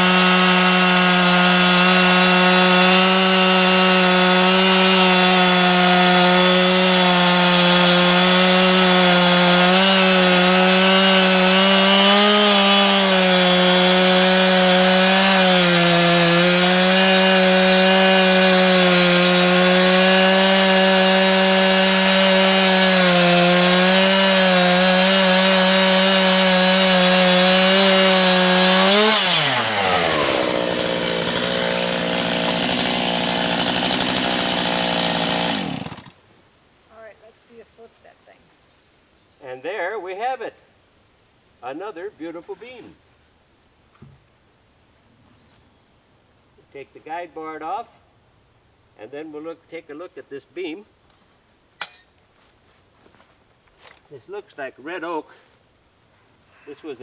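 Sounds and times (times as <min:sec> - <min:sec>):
chainsaw cutting log: 0:00.0 - 0:36.2.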